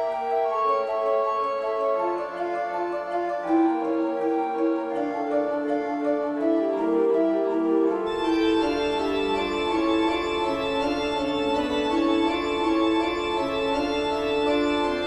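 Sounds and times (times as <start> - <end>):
horror organ chords: 8.0 - 15.0.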